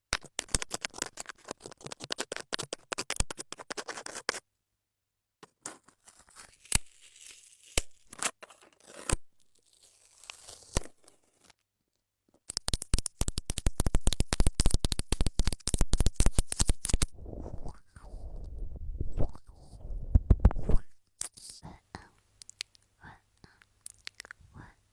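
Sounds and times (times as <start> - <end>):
crinkles: 0.1 - 4.4, 5.4 - 11.7, 12.4 - 17.1.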